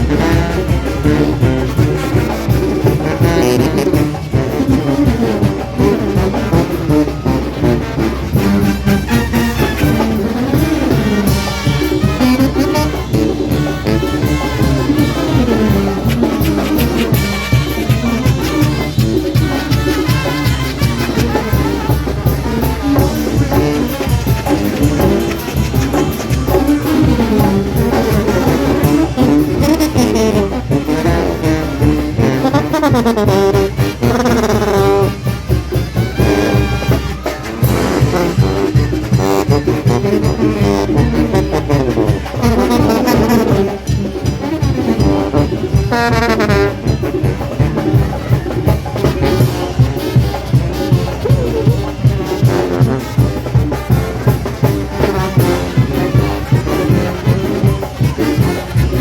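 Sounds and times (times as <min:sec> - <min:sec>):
brass band playing dance tune: 0:00.0 - 0:59.0
steady drum beat: 0:00.0 - 0:59.0.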